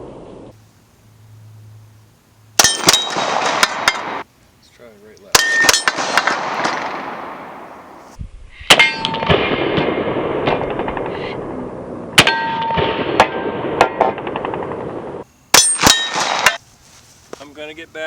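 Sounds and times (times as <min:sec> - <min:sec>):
pistol shots: 0:02.6 - 0:04.2, 0:05.3 - 0:08.0, 0:12.2 - 0:16.6
steel target clanging: 0:02.6 - 0:04.2, 0:05.3 - 0:07.1, 0:08.7 - 0:11.1, 0:12.2 - 0:16.6.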